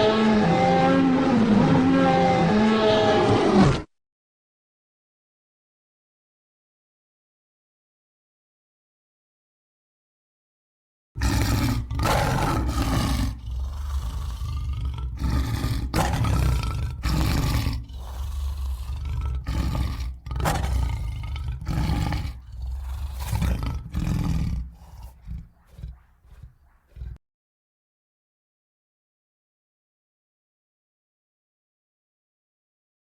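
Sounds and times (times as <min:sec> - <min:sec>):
lion roaring and growling: 0:00.0 - 0:03.9, 0:11.2 - 0:27.2.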